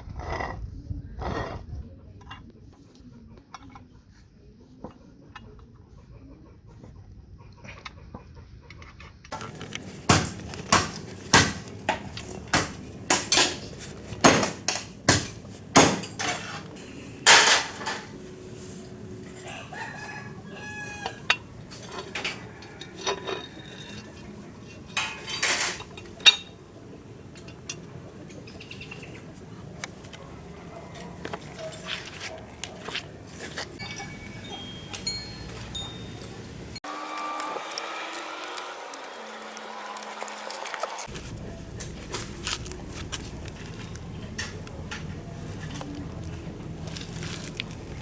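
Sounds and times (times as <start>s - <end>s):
metallic knocks and clinks: 9.4s - 18.2s, 19.2s - 29.3s, 33.8s - 36.8s
rooster crowing: 18.9s - 24.2s.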